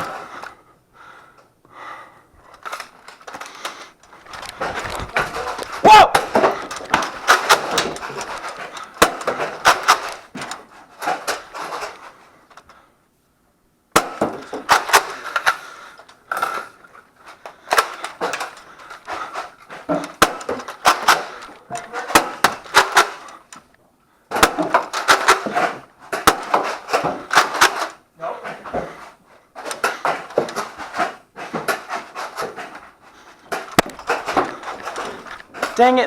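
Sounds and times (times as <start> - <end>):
foam darts hitting hard surfaces: 4.6 - 12.0, 13.9 - 16.6, 17.7 - 23.5, 24.3 - 28.0.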